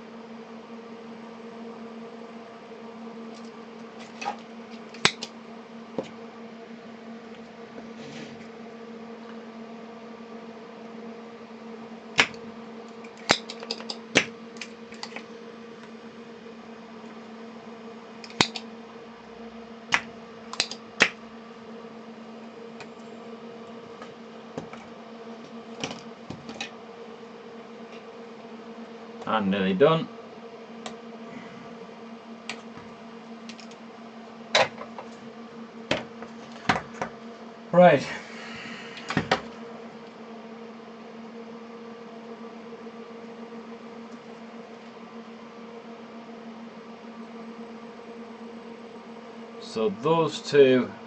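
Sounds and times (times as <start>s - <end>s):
electrical hum: 0.0s - 51.0s
tools clicking and snapping: 5.0s - 5.3s, 13.1s - 14.0s, 18.2s - 18.6s, 19.9s - 21.1s.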